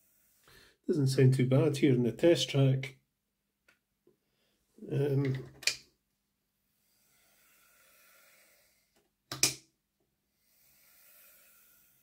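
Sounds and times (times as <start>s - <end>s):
sharp click: 9.3s - 9.6s.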